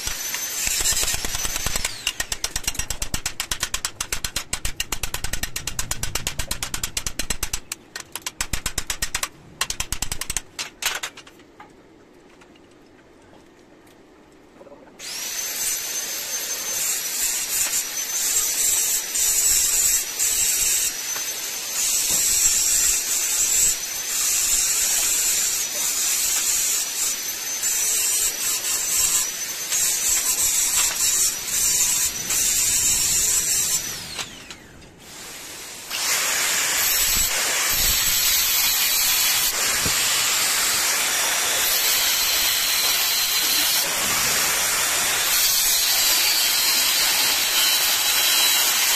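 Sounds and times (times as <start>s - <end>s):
power tool motor whine: 0.0s - 2.4s, 15.0s - 25.5s, 28.8s - 48.9s
harsh hiss: 35.0s - 48.9s.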